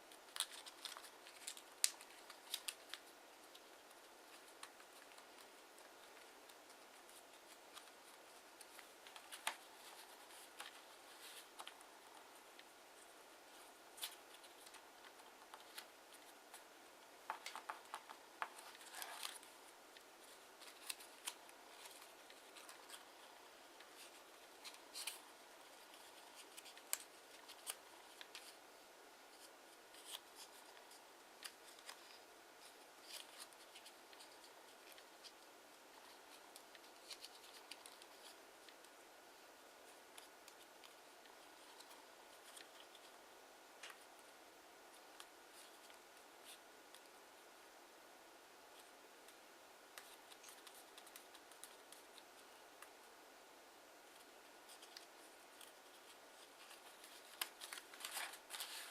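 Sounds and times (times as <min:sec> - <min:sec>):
paper folding crinkles: 0:00.0 - 0:47.4, 0:48.7 - 0:58.9
paper rustling: 0:00.1 - 0:28.6, 0:29.3 - 0:39.0, 0:49.9 - 0:53.0, 0:54.1 - 0:58.9.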